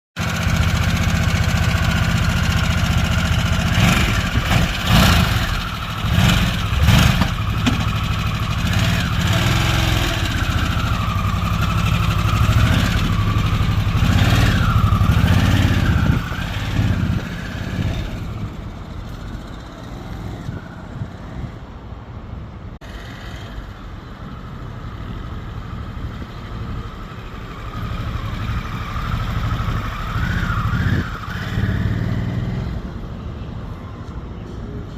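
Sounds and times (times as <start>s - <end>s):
motorcycle engine running: 0.2s - 19.8s.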